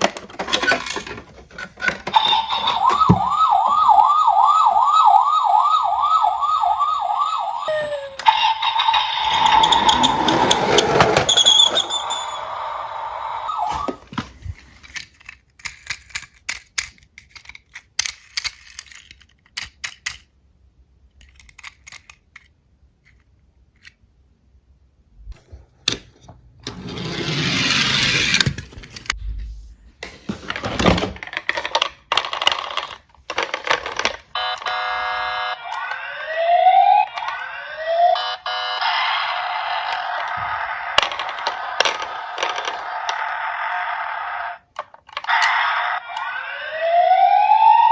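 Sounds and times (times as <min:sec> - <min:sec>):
toy electronic siren: 0:02.1 - 0:14.1, 0:34.4 - 0:47.9
toy cars clicking: 0:05.8 - 0:13.5, 0:14.8 - 0:20.4, 0:21.0 - 0:24.0, 0:31.2 - 0:36.0, 0:39.2 - 0:46.5.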